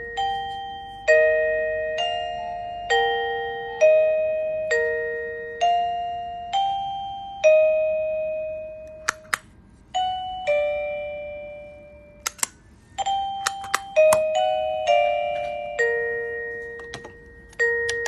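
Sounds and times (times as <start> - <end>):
doorbell ding-dong chime: 0.0 - 9.3, 9.9 - 12.2, 13.0 - 18.0
sharp clicks: 12.2 - 12.6.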